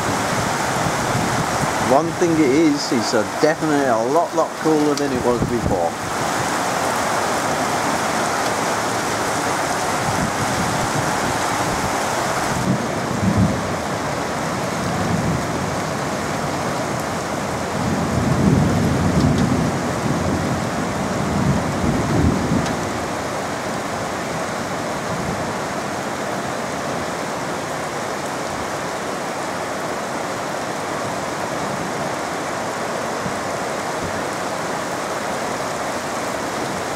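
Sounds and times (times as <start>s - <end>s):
heavy rain pouring: 0.0s - 36.9s
thunder rumbling: 4.5s - 14.1s.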